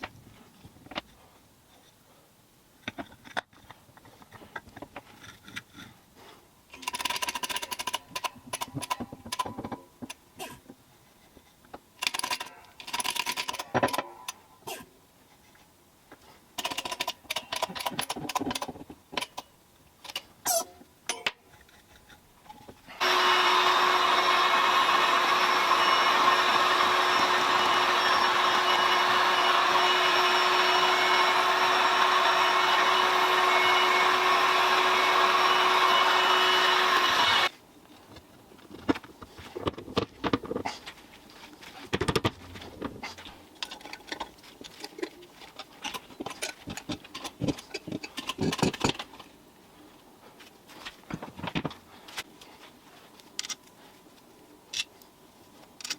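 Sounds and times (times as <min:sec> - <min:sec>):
metal parts clicking and knocking: 0:06.7 - 0:10.2, 0:12.0 - 0:14.4, 0:16.6 - 0:20.3
drill press humming: 0:23.0 - 0:37.5.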